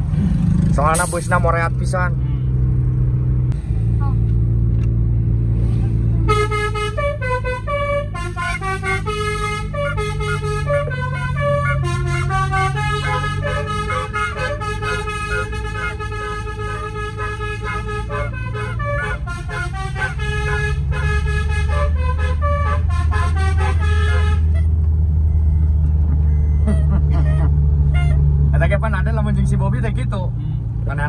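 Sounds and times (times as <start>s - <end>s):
vehicle running hum: 0.0s - 31.0s
musical horn playing a tune: 6.2s - 24.7s.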